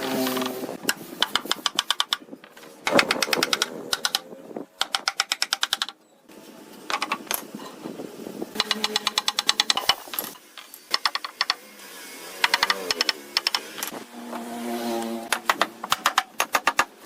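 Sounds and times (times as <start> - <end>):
power tool hammering on wood: 12.4 - 13.7, 15.3 - 16.9.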